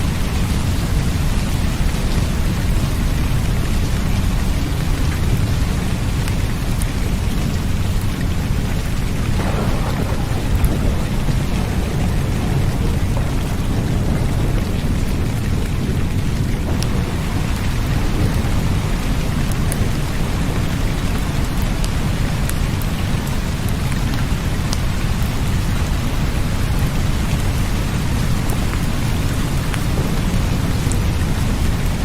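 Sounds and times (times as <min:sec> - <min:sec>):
heavy rain: 0:00.0 - 0:32.0
deep low rumble: 0:09.2 - 0:21.2.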